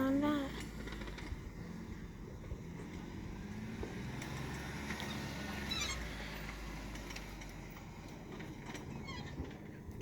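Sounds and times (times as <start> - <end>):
car engine under load: 0.0 - 10.0
high squeak: 5.1 - 6.1.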